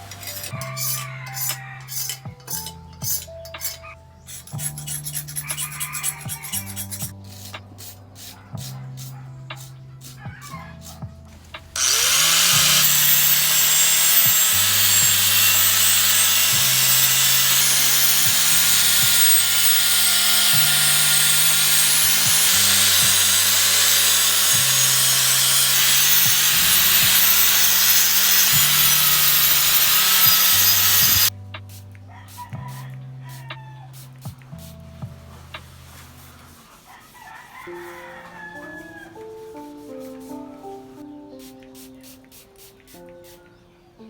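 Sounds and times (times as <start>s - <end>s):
power tool sanding with hiss: 11.8s - 31.3s.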